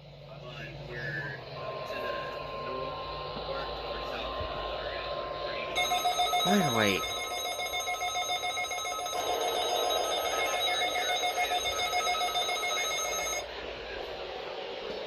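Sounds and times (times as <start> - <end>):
rapid electronic alert beeps: 5.8 - 13.4.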